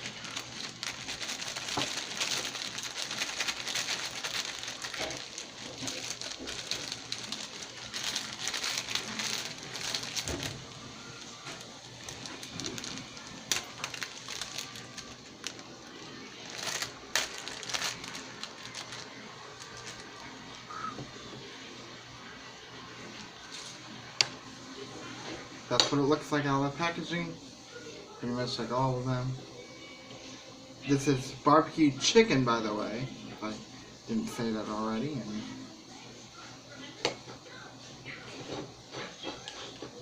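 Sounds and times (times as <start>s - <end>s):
food packaging crinkling: 0.0s - 21.0s.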